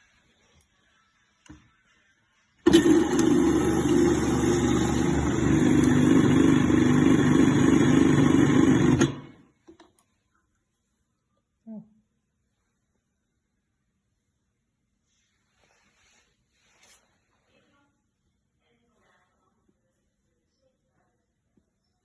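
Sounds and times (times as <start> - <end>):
juicer motor humming whine: 2.6 - 9.5.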